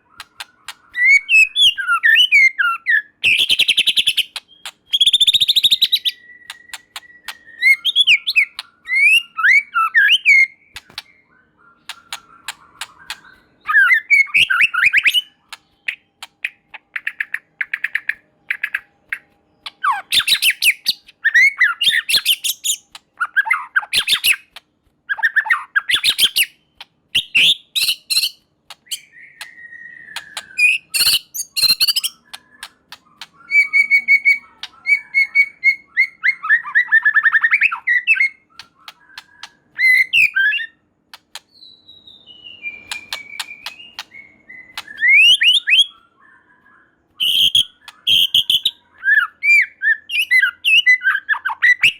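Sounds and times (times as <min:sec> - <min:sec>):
songbird whistles and trills: 0:00.0 - 0:51.9
bird clicking rattles: 0:00.2 - 0:00.9, 0:11.9 - 0:13.3.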